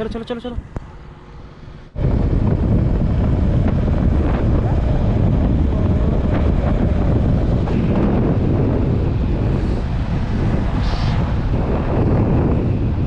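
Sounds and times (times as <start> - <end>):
wind buffeting microphone: 0.0 - 13.0.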